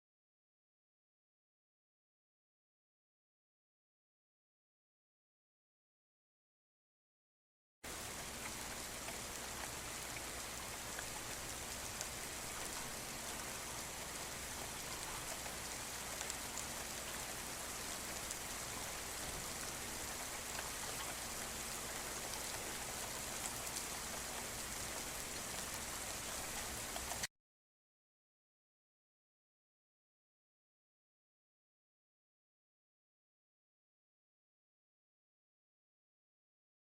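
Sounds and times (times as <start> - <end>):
steady rain falling: 7.9 - 27.3.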